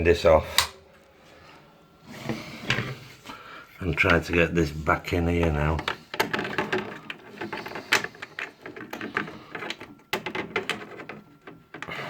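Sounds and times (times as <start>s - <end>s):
plastic and metal clicks and rattles: 5.7s - 11.9s.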